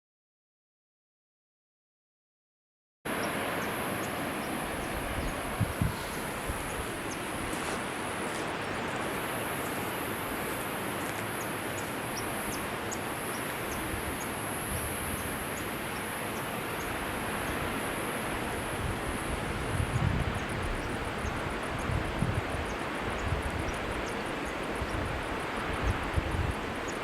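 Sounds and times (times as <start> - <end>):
waterfall rushing: 3.1 - 19.8.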